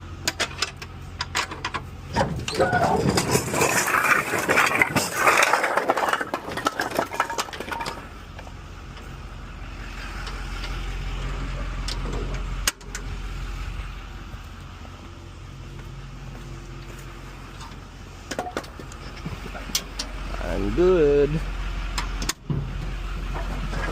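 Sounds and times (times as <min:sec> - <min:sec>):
rough clattering and knocking: 0:00.2 - 0:08.5, 0:22.0 - 0:23.9
low engine hum: 0:07.4 - 0:23.9.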